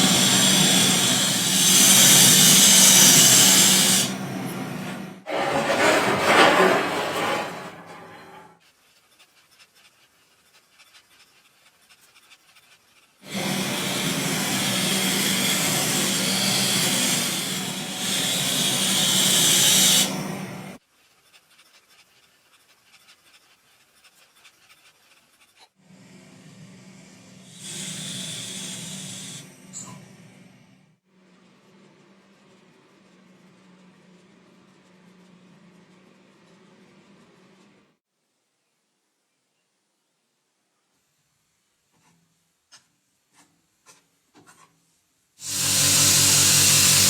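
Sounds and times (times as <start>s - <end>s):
machine motor hum with hiss: 13.2s - 20.8s, 25.9s - 30.8s, 45.4s - 47.0s.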